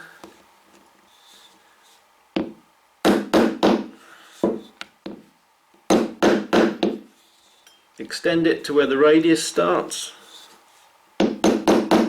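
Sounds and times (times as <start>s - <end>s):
mallet striking chisel: 11.2s - 12.0s.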